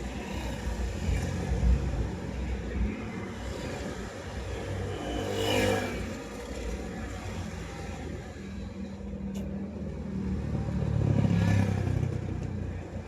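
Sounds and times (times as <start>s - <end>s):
traffic engines droning: 0.0s - 13.0s.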